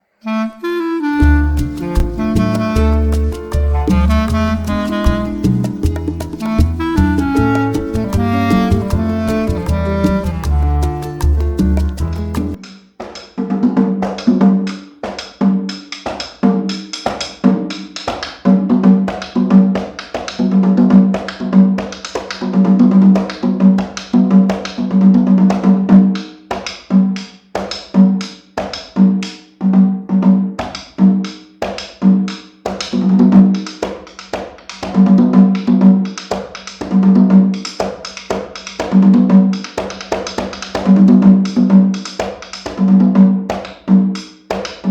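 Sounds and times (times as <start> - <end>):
drum strokes: 0.6 - 27.0, 30.5 - 44.9.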